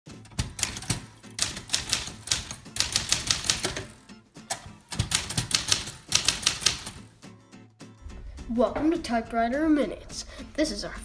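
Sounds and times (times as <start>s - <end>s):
background music: 0.1s - 11.0s
typewriter keys clacking: 0.3s - 7.0s.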